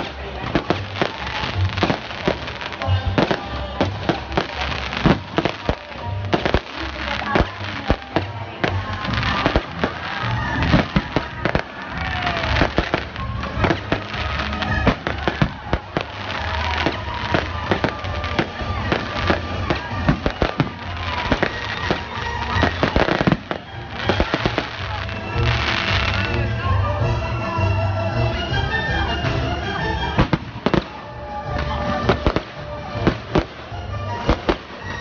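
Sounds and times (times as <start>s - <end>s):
fireworks bangs: 0.0s - 26.5s, 29.1s - 35.0s
musical theatre soundtrack: 0.0s - 35.0s.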